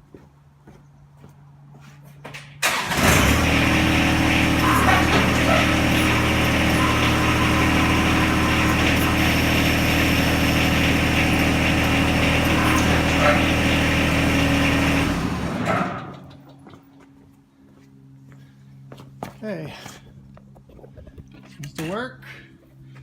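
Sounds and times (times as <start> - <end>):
tractor diesel engine running: 2.6 - 17.2.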